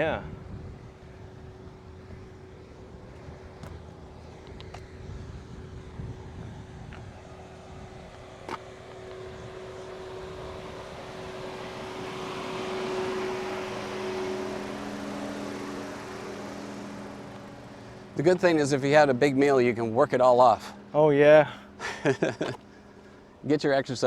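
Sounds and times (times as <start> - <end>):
wind buffeting microphone: 0.0 - 12.9
steady low hum: 0.0 - 24.0
vehicle driving past: 0.0 - 24.0.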